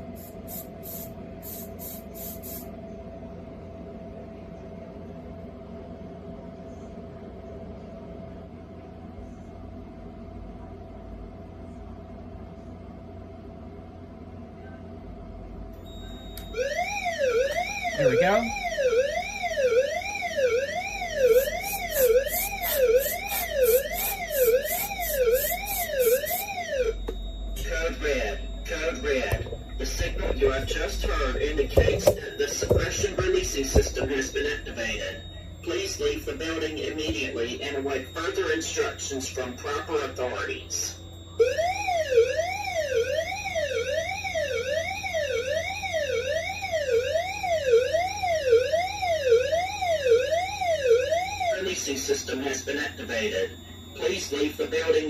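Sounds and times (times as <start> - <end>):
sweeping alarm tone: 15.8 - 55.0.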